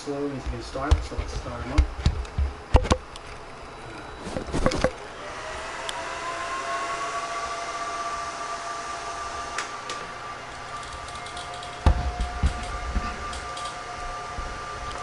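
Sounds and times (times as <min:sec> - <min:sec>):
server cooling fans whirring: 0:00.0 - 0:15.0.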